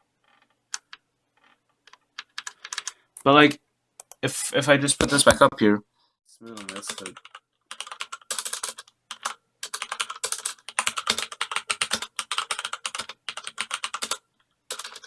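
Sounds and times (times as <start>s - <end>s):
mechanical keyboard typing: 1.9s - 3.0s, 6.5s - 15.0s.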